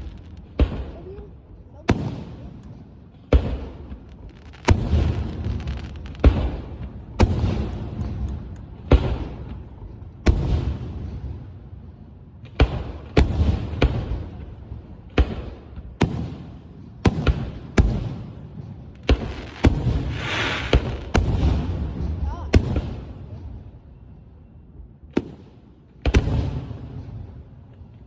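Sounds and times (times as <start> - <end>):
firework shells booming: 19.0 - 23.0.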